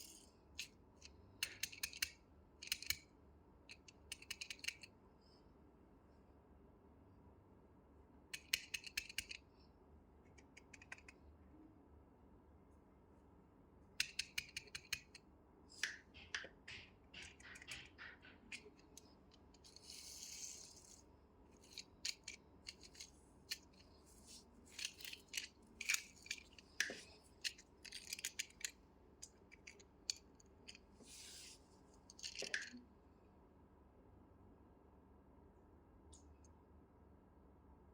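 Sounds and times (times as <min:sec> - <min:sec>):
plastic toys clicking and tapping: 0:01.4 - 0:03.0, 0:03.7 - 0:04.9, 0:08.4 - 0:09.4, 0:10.4 - 0:11.2, 0:14.0 - 0:15.2, 0:15.8 - 0:21.0, 0:21.6 - 0:23.9, 0:24.7 - 0:30.9, 0:32.1 - 0:32.8.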